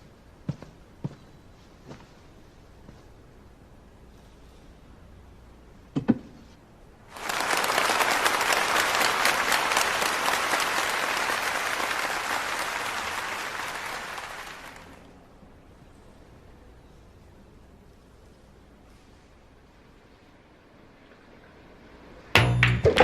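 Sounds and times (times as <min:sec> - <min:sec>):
audience applauding: 0:07.1 - 0:15.1.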